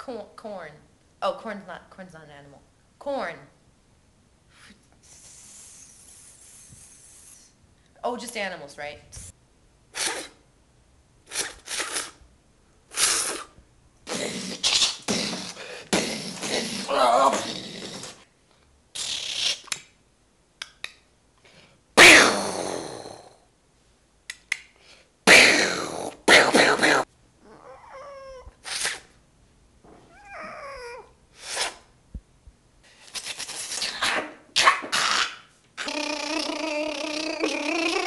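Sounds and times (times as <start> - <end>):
women imitating animal noises: 35.1 - 38.0.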